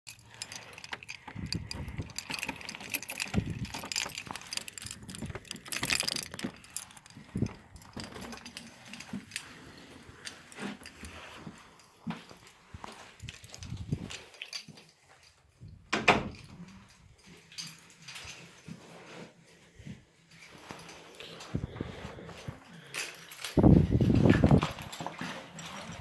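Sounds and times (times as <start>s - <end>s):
jangling rattle: 0.1s - 9.5s, 12.8s - 14.8s, 22.9s - 26.0s
objects clicking and rattling: 0.1s - 11.5s, 12.2s - 18.7s, 20.4s - 26.0s.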